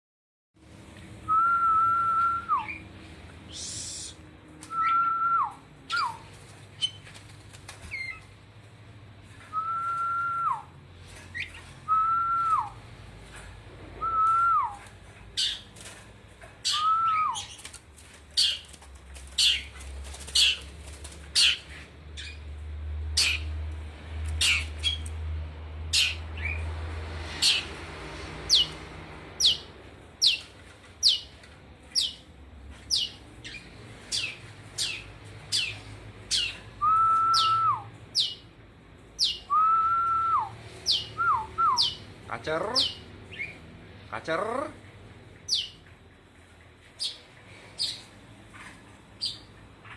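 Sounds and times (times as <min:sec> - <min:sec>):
bird whistling: 0:03.5 - 0:06.2, 0:16.6 - 0:17.6, 0:36.3 - 0:38.4, 0:39.2 - 0:42.0
short high-pitched bird calls: 0:37.3 - 0:38.4.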